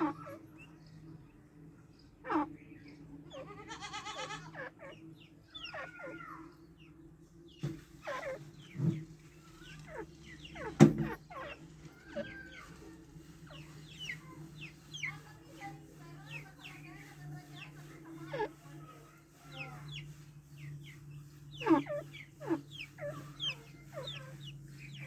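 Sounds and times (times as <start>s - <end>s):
steady low hum: 6.6s - 25.0s.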